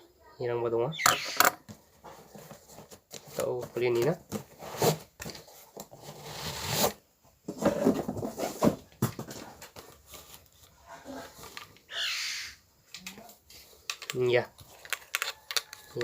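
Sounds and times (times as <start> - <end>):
packaging rustling and clicking: 13.8 - 16.0.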